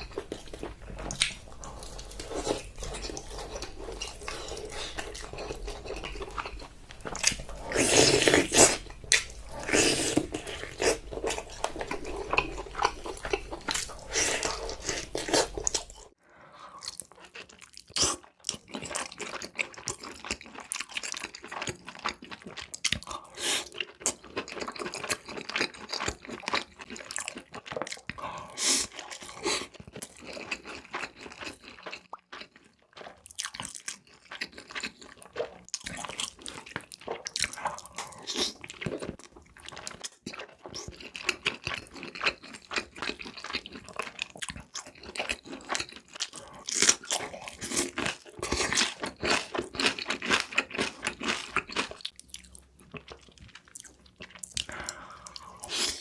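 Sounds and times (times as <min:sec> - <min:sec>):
chewing and crunching food: 0:00.0 - 0:56.0.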